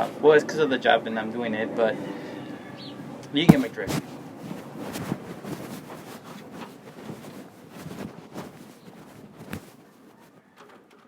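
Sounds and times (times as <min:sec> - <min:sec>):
sharp knock: 0:03.5 - 0:04.0
objects knocking and rustling: 0:03.5 - 0:09.9.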